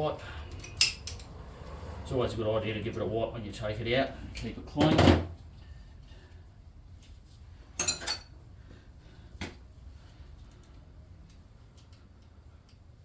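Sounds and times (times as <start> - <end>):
metal hand tools clinking: 0.5 - 1.4, 7.8 - 8.3.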